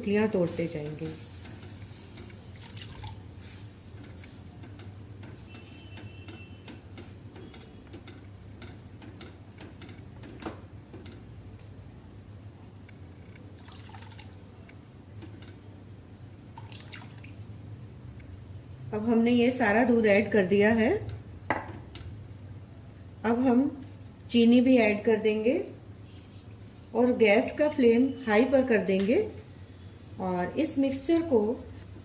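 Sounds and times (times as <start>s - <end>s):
spoon clicking and scraping on pan: 3.5s - 11.3s
milk pouring into pan: 13.6s - 14.4s.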